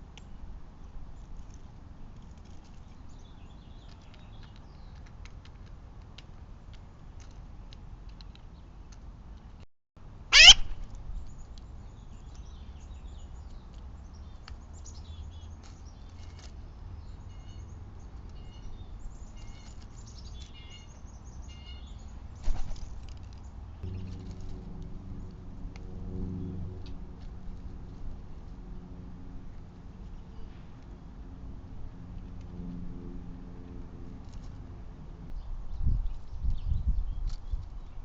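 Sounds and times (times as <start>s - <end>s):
light ticks and rustles: 1.1s - 9.6s
sharp squeak rising in pitch: 10.3s - 10.8s.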